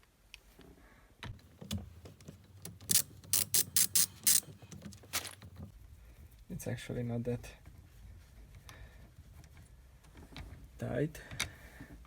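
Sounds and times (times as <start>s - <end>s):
ratchet wrench clicking: 2.8s - 4.5s.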